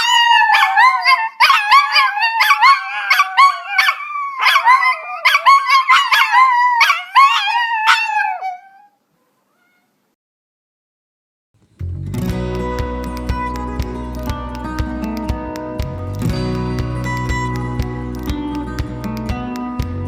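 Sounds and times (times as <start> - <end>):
dog howling high-pitched: 0.0 - 9.0
dog yipping: 0.0 - 10.0.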